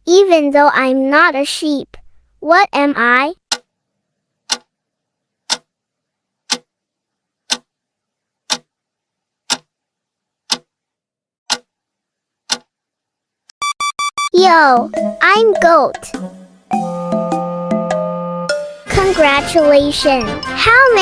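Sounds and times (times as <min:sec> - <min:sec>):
clock ticking: 0:03.5 - 0:03.7, 0:04.5 - 0:04.7, 0:05.5 - 0:05.7, 0:06.5 - 0:06.7, 0:07.5 - 0:07.7, 0:08.5 - 0:08.7, 0:09.5 - 0:09.7, 0:10.5 - 0:10.7, 0:11.5 - 0:11.7, 0:12.5 - 0:12.7
short bright beeps: 0:13.5 - 0:14.4.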